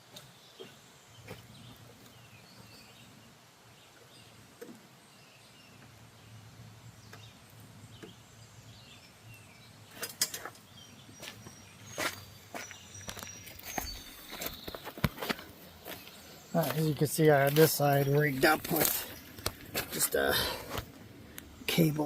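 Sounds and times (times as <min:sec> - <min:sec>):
faint bird chirps: 0:07.0 - 0:15.0.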